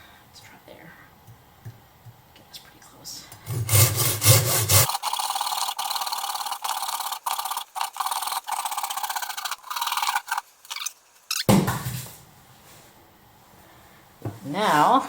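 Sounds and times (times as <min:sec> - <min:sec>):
saw cutting wood: 0:03.5 - 0:11.3.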